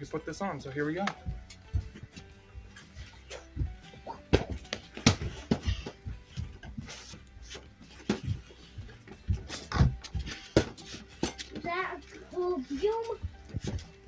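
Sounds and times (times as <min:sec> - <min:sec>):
knocks and thuds: 0:01.1 - 0:07.0, 0:07.9 - 0:11.8.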